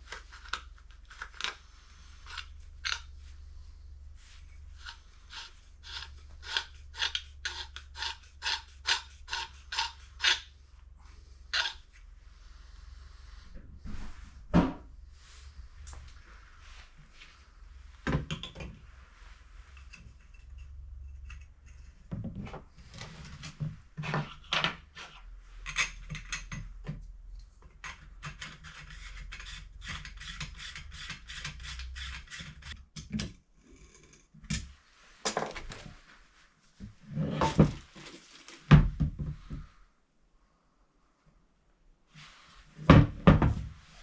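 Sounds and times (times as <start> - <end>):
tools clinking and tapping: 25.6 - 27.0.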